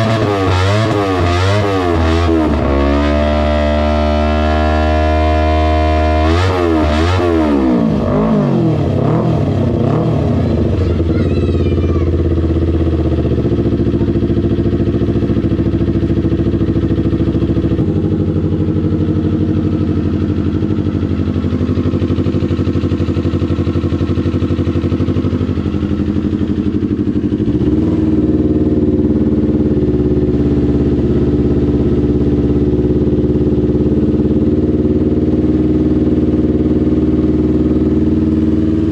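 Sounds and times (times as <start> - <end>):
motorcycle engine revving and idling: 0.0 - 38.9.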